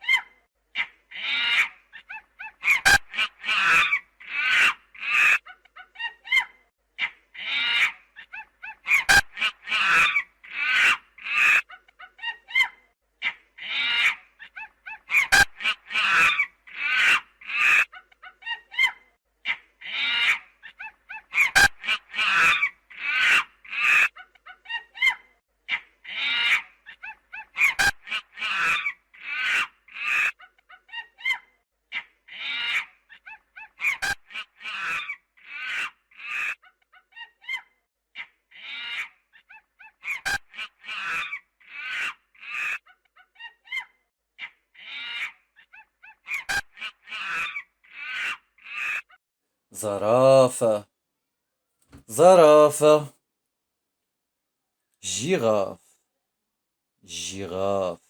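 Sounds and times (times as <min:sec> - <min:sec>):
shrill animal calls: 0:00.0 - 0:49.2.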